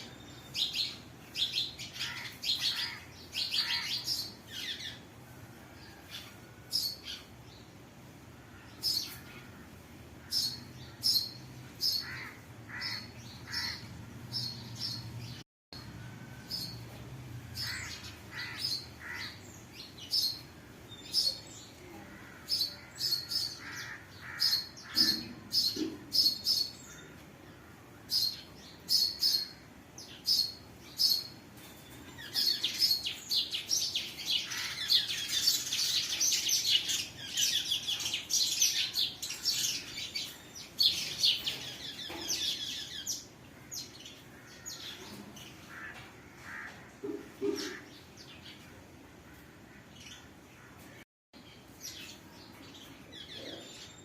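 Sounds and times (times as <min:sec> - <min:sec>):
birds chirping: 0:00.0 - 0:54.0
dense twittering of birds: 0:00.0 - 0:54.0.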